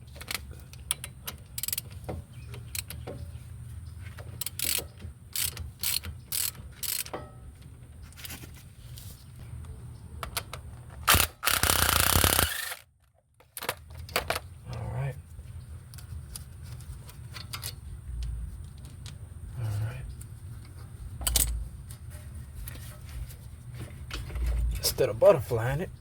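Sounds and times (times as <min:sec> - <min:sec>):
hand tools clicking and ratcheting: 0:00.1 - 0:03.0, 0:04.2 - 0:07.4, 0:10.2 - 0:12.9, 0:21.2 - 0:21.6.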